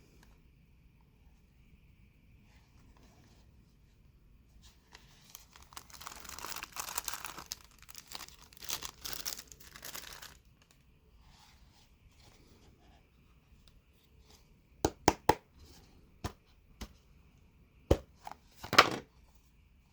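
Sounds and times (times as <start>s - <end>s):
packaging crinkling and tearing: 5.0s - 10.8s.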